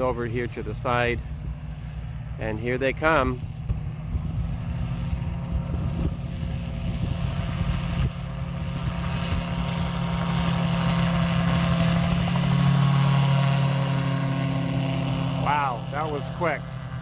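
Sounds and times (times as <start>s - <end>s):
gyroplane engine and propeller: 0.0s - 17.0s.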